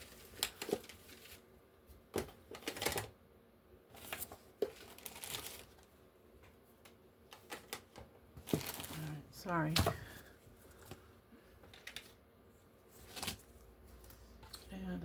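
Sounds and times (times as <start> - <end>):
paper rustling: 0.0 - 1.4, 3.9 - 5.9, 12.9 - 14.7.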